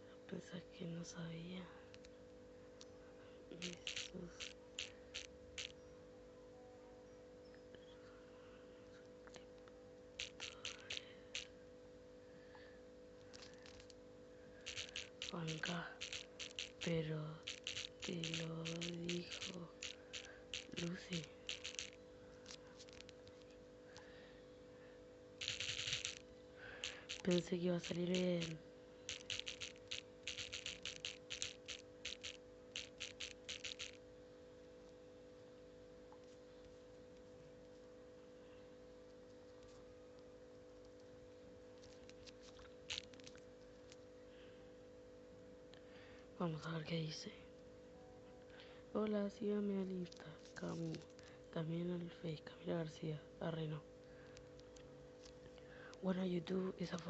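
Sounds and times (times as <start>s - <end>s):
faint electrical hum: 0.0s - 57.0s
typing taps on phone keyboard: 10.2s - 11.5s, 14.7s - 22.0s, 25.4s - 26.2s, 26.8s - 34.0s, 42.9s - 43.4s.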